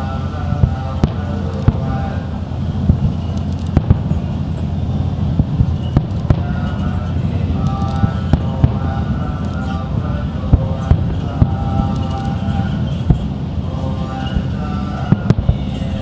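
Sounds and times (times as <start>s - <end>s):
low rumble: 0.0s - 16.0s
fireworks bangs: 0.6s - 8.8s.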